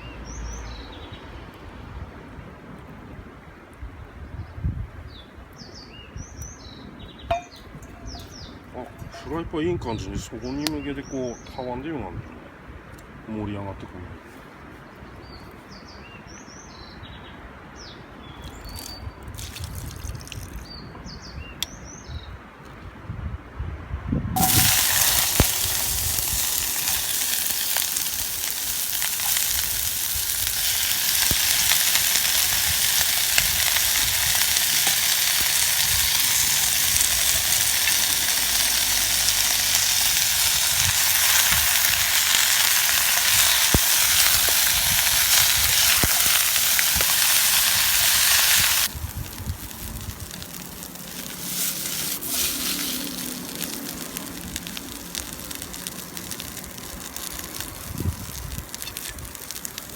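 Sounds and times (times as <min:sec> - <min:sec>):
faint bird chirps: 0:05.2 - 0:09.4
food sizzling in a frying pan: 0:18.7 - 0:20.6, 0:24.4 - 0:59.9.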